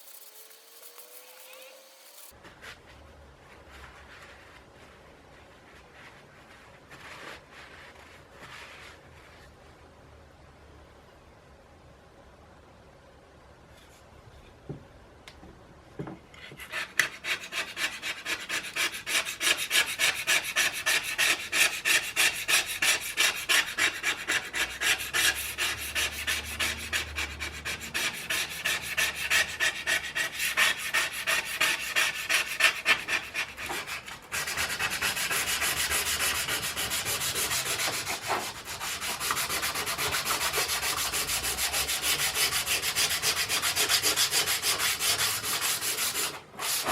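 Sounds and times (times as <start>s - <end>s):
sandpaper scrubbing: 16.7s - 46.9s.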